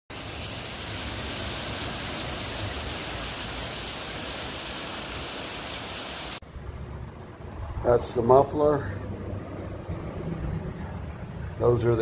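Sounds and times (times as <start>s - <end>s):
heavy rain falling: 0.1s - 6.4s.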